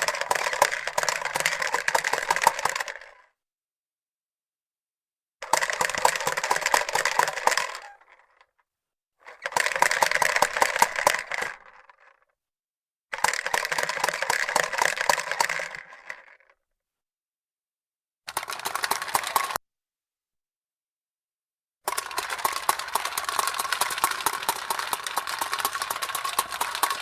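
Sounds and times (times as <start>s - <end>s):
push toy balls popping and clattering: 0.0s - 3.3s, 5.4s - 8.5s, 9.3s - 12.2s, 13.1s - 16.5s, 18.3s - 19.6s, 21.9s - 27.0s.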